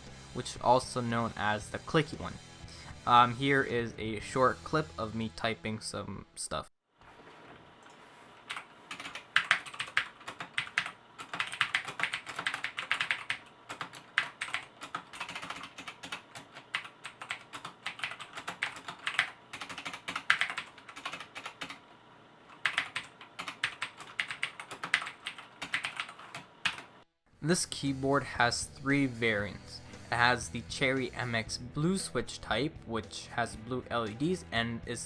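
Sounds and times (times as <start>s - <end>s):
clicky mechanical keyboard typing: 7.8s - 21.9s, 22.5s - 26.9s.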